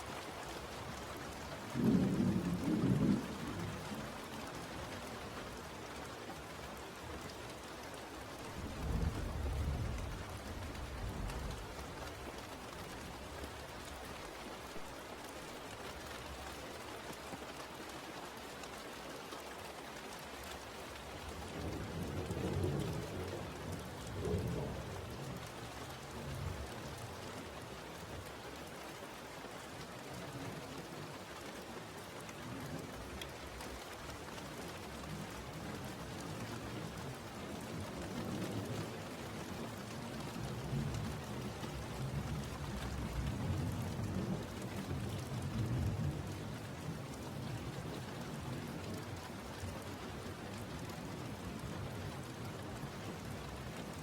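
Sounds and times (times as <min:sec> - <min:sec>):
steady rain falling: 0:00.0 - 0:54.0
thunder rumbling: 0:01.7 - 0:03.9, 0:08.5 - 0:11.8.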